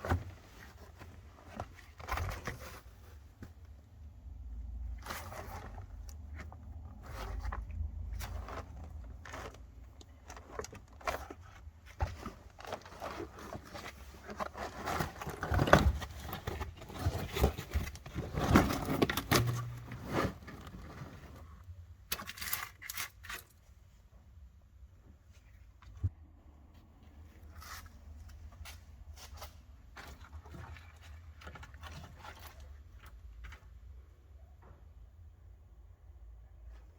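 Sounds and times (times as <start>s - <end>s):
car interior parts clattering and tearing: 5.0s - 23.3s.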